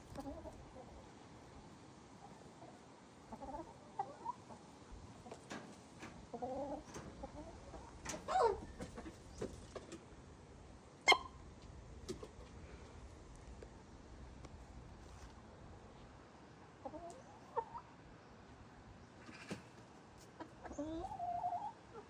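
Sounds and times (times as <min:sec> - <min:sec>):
hen clucking: 0:00.0 - 0:01.1, 0:02.2 - 0:09.9, 0:11.1 - 0:11.4, 0:16.8 - 0:17.9, 0:20.2 - 0:22.0.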